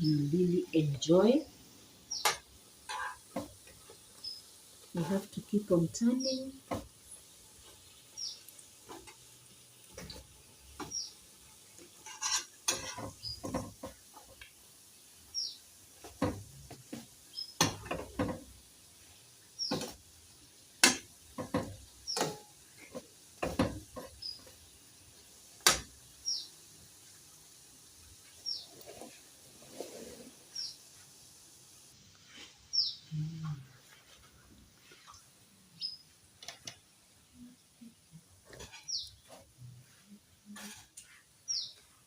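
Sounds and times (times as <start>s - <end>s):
faint frying sizzle: 0.0s - 42.0s
falling bird chirps: 2.0s - 3.2s, 10.8s - 11.2s, 12.2s - 13.7s, 19.6s - 20.0s, 21.7s - 22.4s
utensil scraping frying pan: 2.1s - 5.4s, 11.7s - 14.4s, 19.6s - 20.0s, 20.8s - 24.6s, 28.2s - 30.8s, 38.4s - 41.7s.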